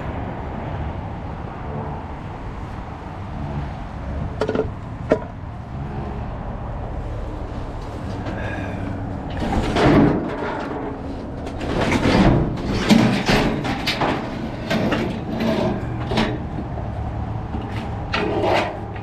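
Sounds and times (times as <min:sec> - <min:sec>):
junk scraping in dumpster: 0:07.4 - 0:19.0.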